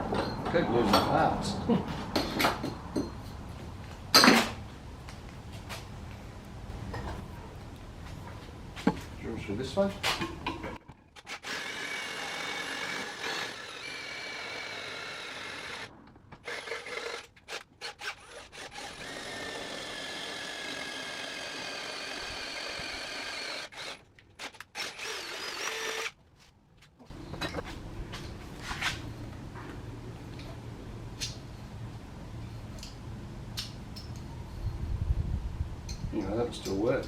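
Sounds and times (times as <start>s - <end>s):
electric drill whining: 11.3s - 26.2s.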